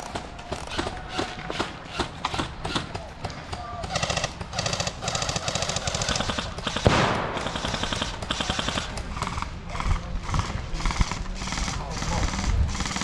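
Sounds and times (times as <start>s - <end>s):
airsoft guns firing bursts: 0.0s - 13.0s.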